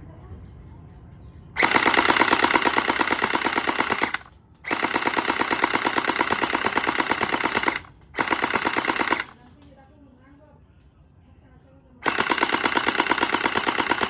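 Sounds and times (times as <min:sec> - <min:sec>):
gel blaster firing bursts: 0:01.6 - 0:09.4, 0:12.0 - 0:14.0.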